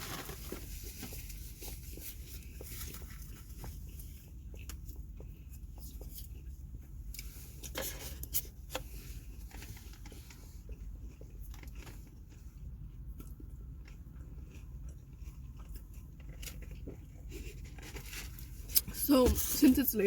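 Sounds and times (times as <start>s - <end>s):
food wrappers crinkling: 0.0s - 1.3s
chewing and crunching: 0.0s - 20.0s.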